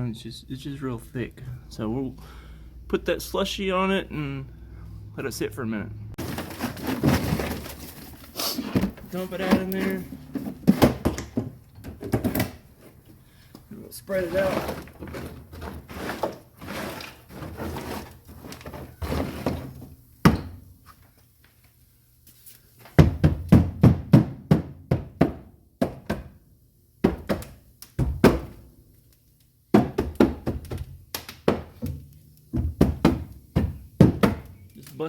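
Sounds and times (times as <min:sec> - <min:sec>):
slush scraping on metal: 0:14.0 - 0:19.8
frozen clumps knocking on metal: 0:29.7 - 0:34.9.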